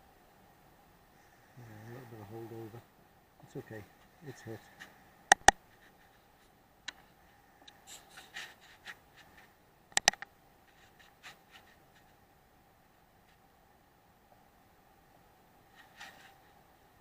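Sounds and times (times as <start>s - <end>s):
air rifle sharp clicks: 5.3s - 5.6s
rustling and scraping: 5.6s - 9.6s, 10.6s - 12.2s, 15.6s - 16.7s.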